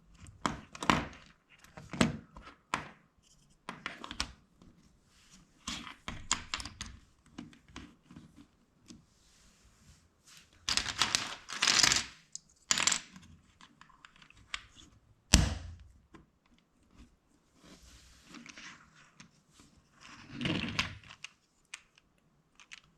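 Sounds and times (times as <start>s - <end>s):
plastic bricks clicking and rattling: 20.6s - 22.9s.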